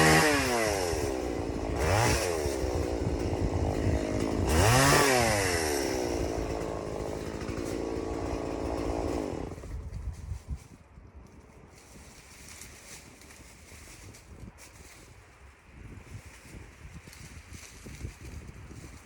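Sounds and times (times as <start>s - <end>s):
chainsaw revving and idling: 0.0s - 9.8s.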